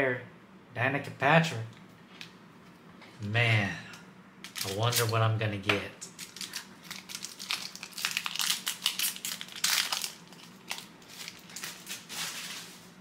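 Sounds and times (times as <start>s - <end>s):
wrapper crinkling and tearing: 4.5s - 5.2s, 6.2s - 12.8s.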